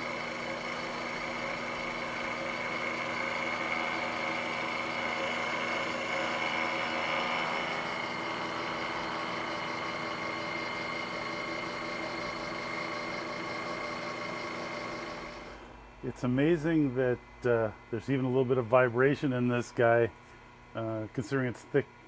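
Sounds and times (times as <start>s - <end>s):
high ringing tone: 0.0s - 14.5s
milling machine cutting metal: 0.0s - 15.7s.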